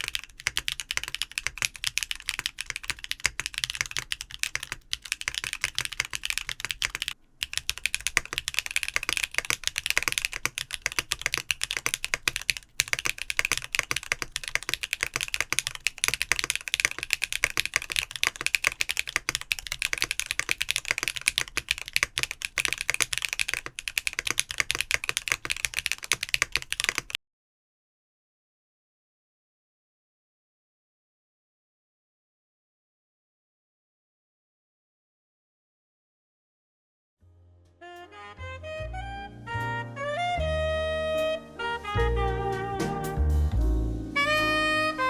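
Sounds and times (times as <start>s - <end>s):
fast typing on mechanical keyboard: 0.0s - 27.2s.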